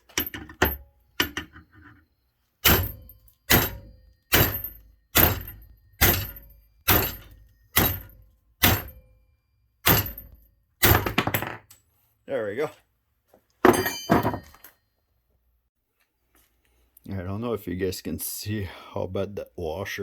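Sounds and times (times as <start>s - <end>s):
sledgehammer striking metal bolt: 2.6s - 9.2s, 9.8s - 11.6s.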